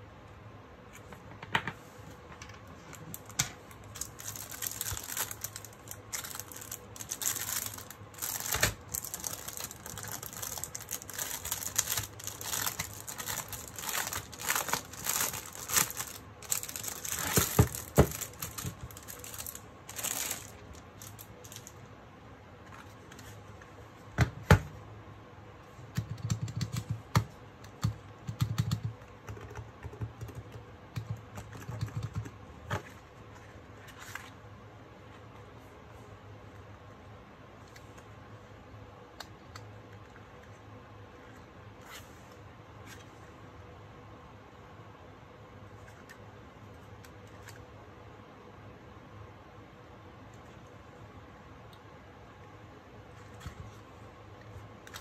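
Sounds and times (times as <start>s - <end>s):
plastic packaging crinkling: 2.9s - 21.8s.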